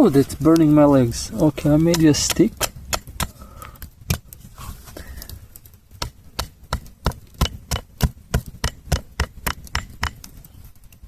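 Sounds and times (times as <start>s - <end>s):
sharp knocks or cracks: 6.0s - 10.3s.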